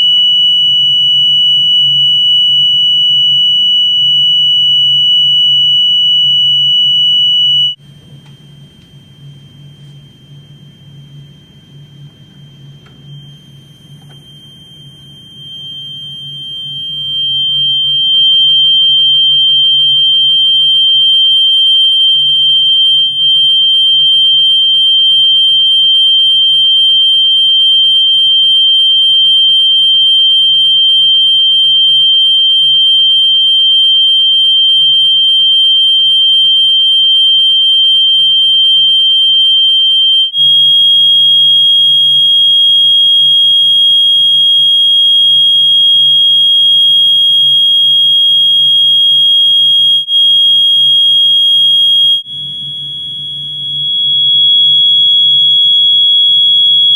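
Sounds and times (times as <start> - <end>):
high-pitched electronic test tone: 0.0 - 7.8, 14.0 - 20.5, 40.3 - 56.9.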